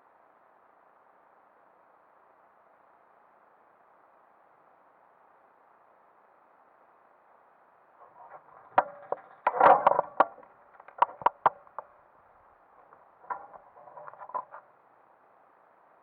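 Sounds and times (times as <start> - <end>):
sharp knocks and clatters: 8.0 - 12.0, 12.8 - 14.7.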